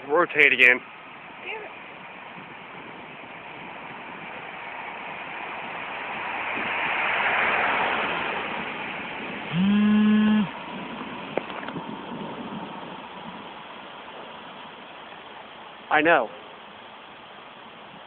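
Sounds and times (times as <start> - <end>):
rain rushing: 0.0 - 9.6, 10.4 - 18.0
storm wind: 0.0 - 15.0
buzzy tone: 9.5 - 10.6.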